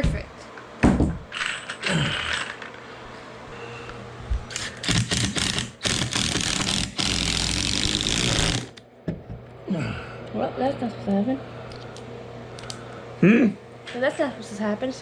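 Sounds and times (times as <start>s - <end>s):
power tool hammering into wood: 4.5s - 8.8s.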